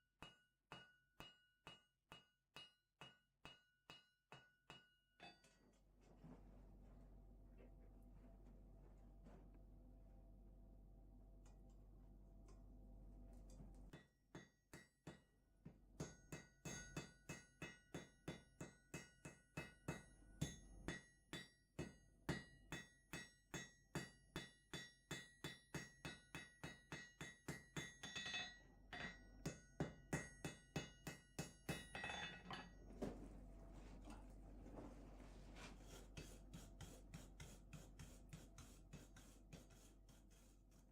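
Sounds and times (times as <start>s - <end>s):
hammer striking steel on anvil: 0.2s - 5.6s, 13.9s - 15.3s, 16.0s - 32.8s.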